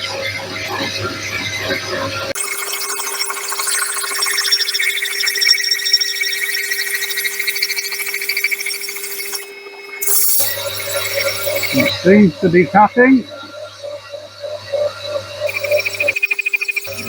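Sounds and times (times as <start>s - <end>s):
hole-cutting bit grinding: 6.5s - 12.0s.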